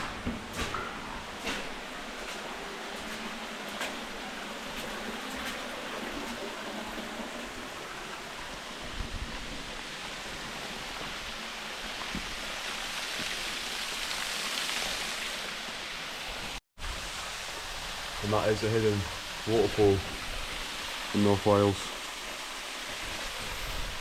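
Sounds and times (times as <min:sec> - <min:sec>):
waterfall rushing: 0:01.9 - 0:24.0.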